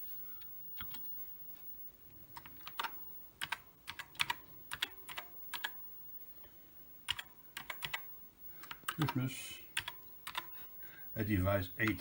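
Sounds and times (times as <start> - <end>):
keyboard typing clicks: 2.4 - 5.8, 7.1 - 9.2, 9.8 - 10.5.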